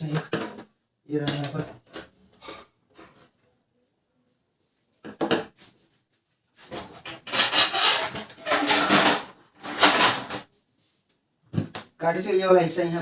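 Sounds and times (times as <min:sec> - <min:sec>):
rubbing and scraping: 0:05.6 - 0:10.5.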